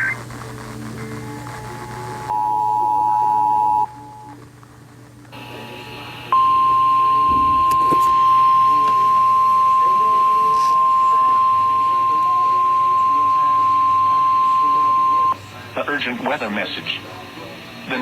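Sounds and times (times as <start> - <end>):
steady warning tone: 5.4 - 17.3.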